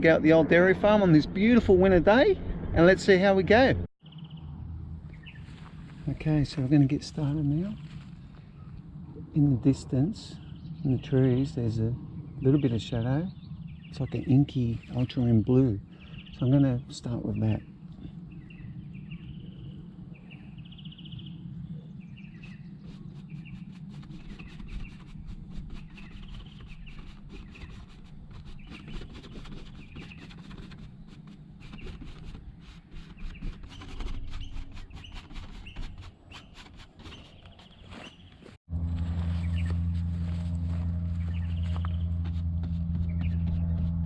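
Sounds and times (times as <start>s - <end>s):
low outdoor rumble: 0.0s - 32.9s, 38.4s - 44.0s
birds calling: 9.6s - 38.6s, 39.2s - 39.9s, 40.8s - 44.0s.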